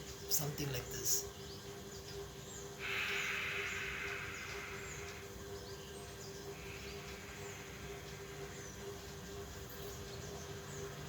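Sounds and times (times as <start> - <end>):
birds chirping: 0.0 - 11.0
steady faint hum: 0.0 - 11.0
long breath blown out: 2.8 - 5.2.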